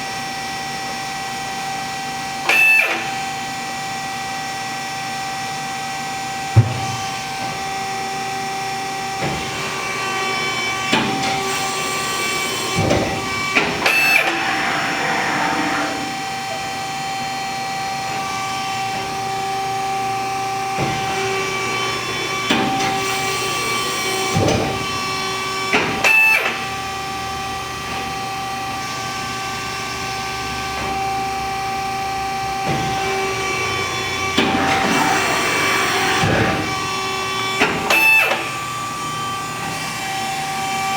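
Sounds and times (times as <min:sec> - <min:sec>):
sheet-metal folding machine whine: 0:00.0 - 0:40.9
machine clunks: 0:06.5 - 0:07.6, 0:09.2 - 0:16.2.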